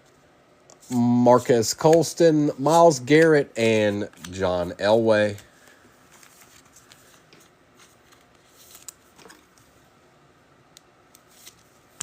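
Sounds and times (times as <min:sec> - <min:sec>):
trading cards rustling and clicking: 0:00.7 - 0:09.7.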